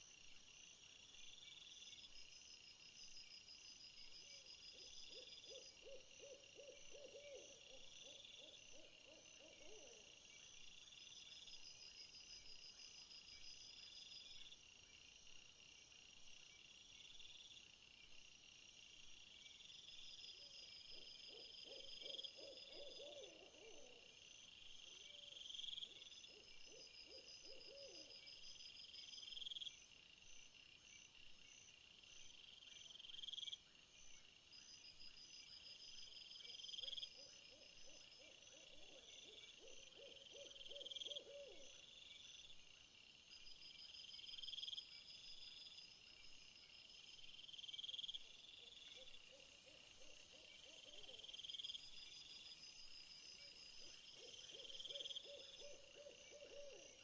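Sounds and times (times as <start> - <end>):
insects chirring: 39.3 - 57.0.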